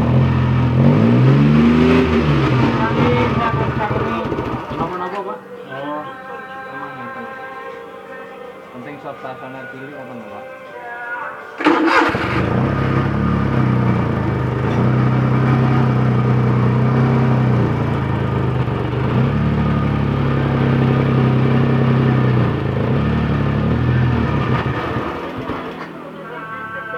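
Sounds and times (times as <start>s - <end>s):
power trowel engine running: 0.0s - 5.2s, 11.6s - 25.9s.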